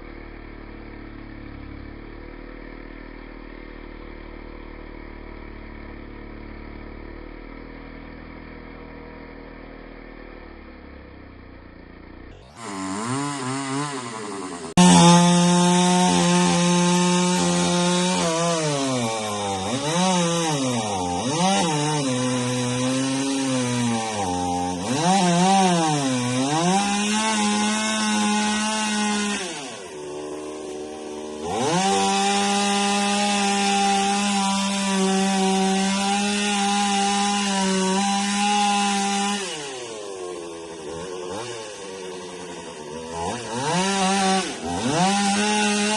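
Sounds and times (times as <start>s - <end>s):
chainsaw cutting wood: 0.0s - 45.9s.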